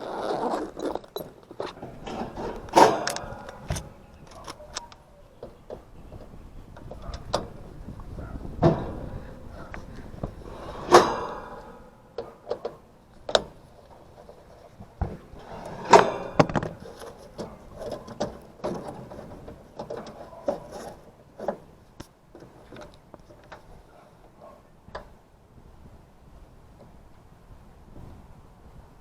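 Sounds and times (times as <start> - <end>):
metal parts clanking: 0.3 - 5.0, 15.4 - 21.5.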